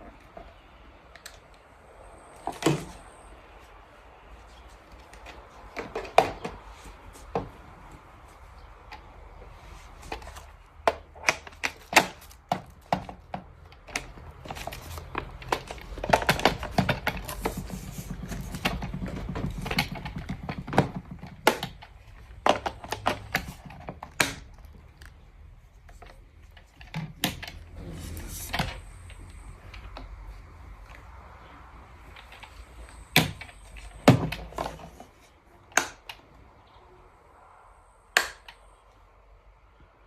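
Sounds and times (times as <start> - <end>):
plastic parts clicking and knocking: 4.9 - 9.3, 10.0 - 31.1, 32.0 - 36.4.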